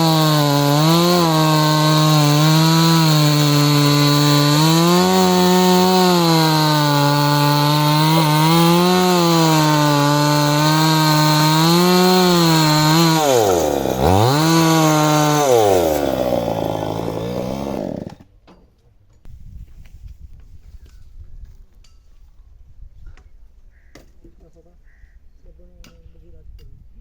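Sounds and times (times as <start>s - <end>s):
chainsaw cutting wood: 0.0s - 18.3s.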